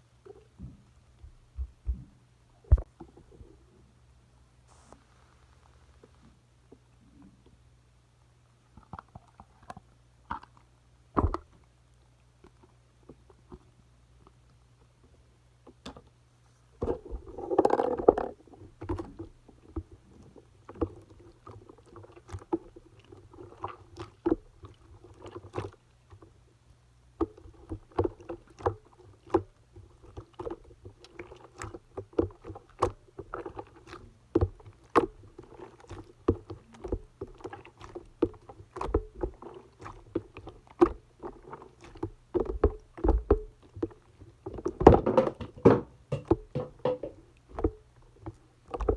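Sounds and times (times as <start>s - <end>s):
slime squishing by hand: 31.0s - 44.9s.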